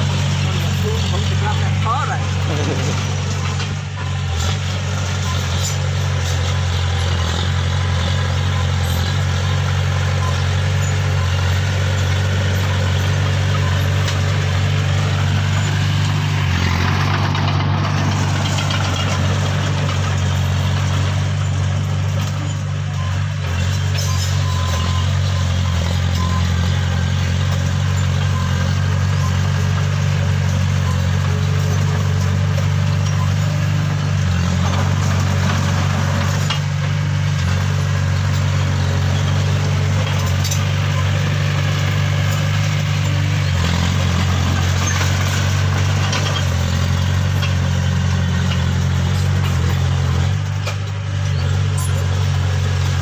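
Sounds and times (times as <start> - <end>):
low mechanical hum: 0.0 - 30.0.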